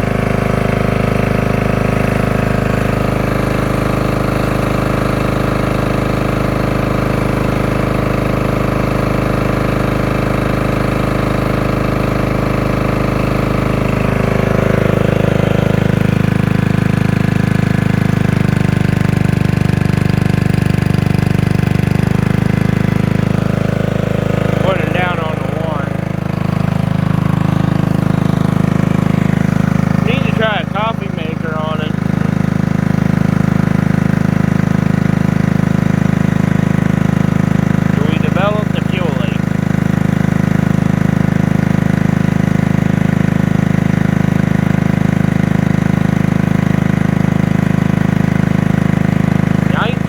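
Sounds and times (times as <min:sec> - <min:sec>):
portable generator engine running: 0:00.0 - 0:50.0.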